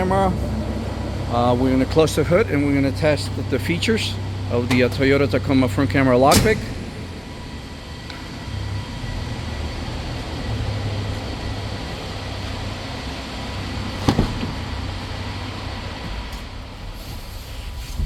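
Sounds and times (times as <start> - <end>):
low background hum: 0.0 - 18.0
truck hood slamming shut: 6.3 - 7.1, 14.0 - 14.8.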